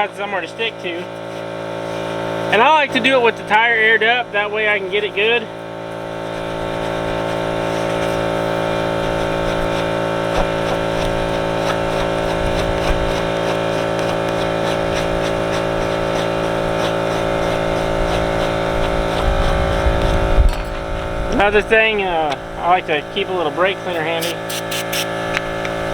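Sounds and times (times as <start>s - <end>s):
machine droning with pitched hum: 0.0s - 25.9s
faint scraping on rubber: 6.4s - 20.5s.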